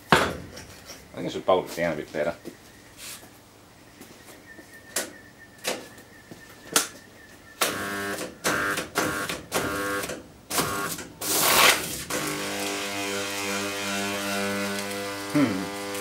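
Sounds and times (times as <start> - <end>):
electric motor hum: 7.6 - 11.4, 12.1 - 16.0.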